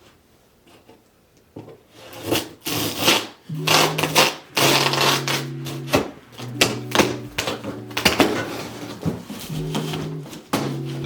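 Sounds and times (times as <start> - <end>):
steady low tones: 3.5 - 11.0.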